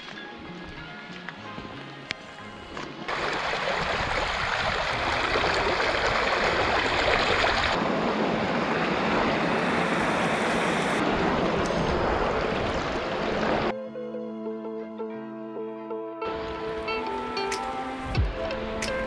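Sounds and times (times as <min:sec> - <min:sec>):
rushing water roaring: 0:03.0 - 0:13.7.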